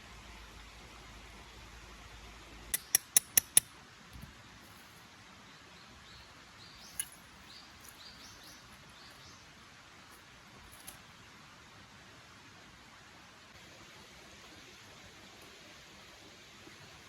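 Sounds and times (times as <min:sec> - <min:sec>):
sharp clicks: 0:02.8 - 0:03.7.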